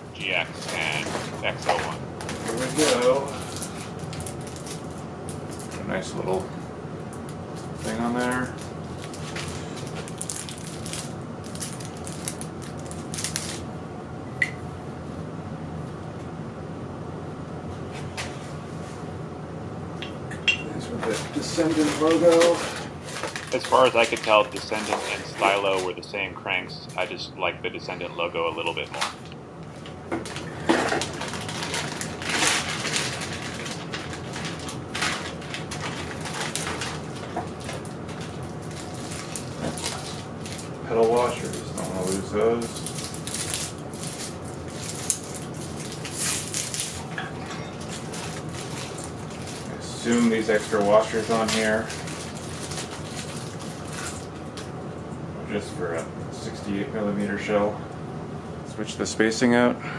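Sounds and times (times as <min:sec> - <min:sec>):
packaging crinkling and rustling: 0:00.6 - 0:05.8, 0:07.6 - 0:13.7, 0:21.1 - 0:26.0, 0:28.5 - 0:47.1, 0:47.8 - 0:54.7.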